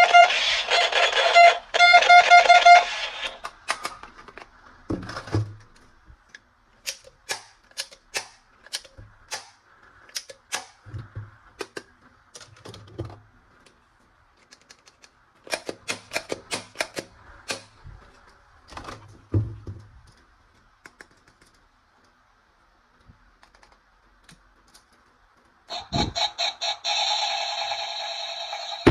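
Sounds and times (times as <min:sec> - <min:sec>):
plastic toy parts clicking: 0:03.4 - 0:04.5, 0:06.3 - 0:10.8, 0:11.6 - 0:12.9, 0:14.4 - 0:18.3.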